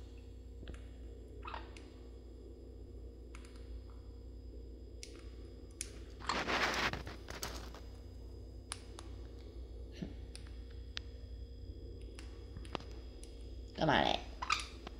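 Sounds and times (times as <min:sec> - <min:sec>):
scratchy crunching: 0:06.2 - 0:07.8.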